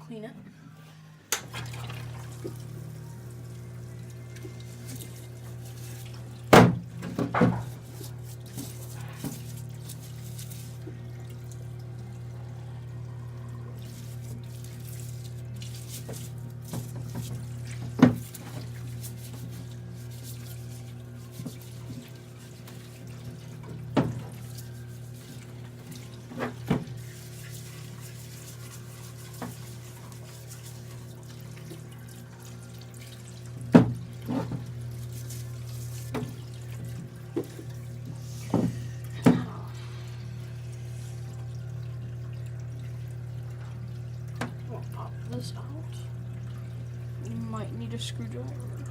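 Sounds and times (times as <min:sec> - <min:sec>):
pump hum: 0:00.9 - 0:48.9
tap water running into sink: 0:01.3 - 0:12.3, 0:13.4 - 0:48.9
solvent streaming and splashing: 0:01.4 - 0:48.9
knocks and clunks in sink: 0:06.5 - 0:07.9, 0:16.7 - 0:18.7, 0:23.7 - 0:24.4, 0:26.3 - 0:27.0, 0:33.6 - 0:34.8, 0:38.5 - 0:39.7.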